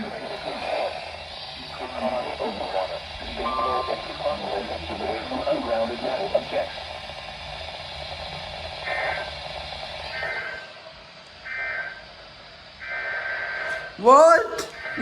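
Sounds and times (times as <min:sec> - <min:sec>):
buzzy two-tone digital warble: 0:01.9 - 0:06.6.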